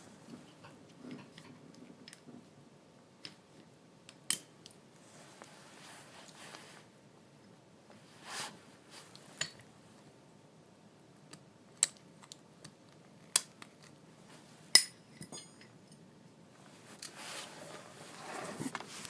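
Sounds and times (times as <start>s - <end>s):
metal tools clicking and clinking: 14.8s - 16.0s.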